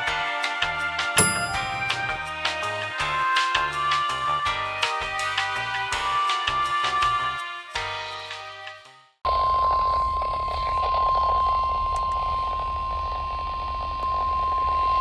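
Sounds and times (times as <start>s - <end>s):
steady high alarm tone: 1.2s - 2.7s.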